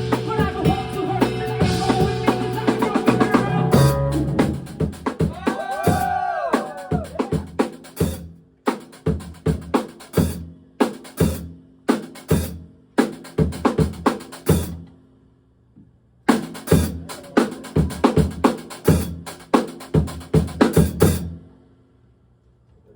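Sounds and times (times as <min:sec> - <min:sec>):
electric bass notes: 0:00.0 - 0:05.0
funk band playing: 0:00.0 - 0:14.7, 0:16.3 - 0:21.3.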